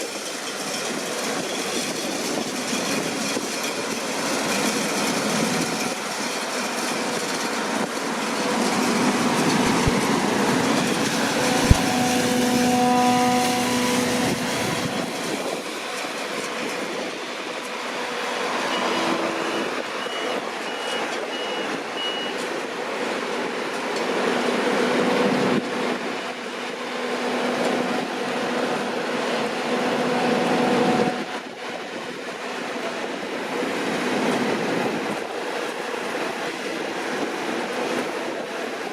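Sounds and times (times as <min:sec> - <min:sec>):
combine harvester running: 0:00.0 - 0:38.9
short high beeps: 0:18.7 - 0:22.4.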